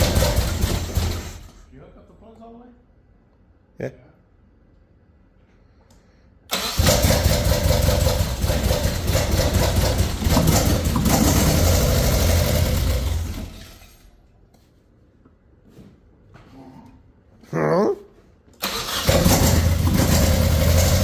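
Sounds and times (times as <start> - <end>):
car engine running roughly: 0.0 - 1.6, 6.6 - 14.1, 18.8 - 21.0.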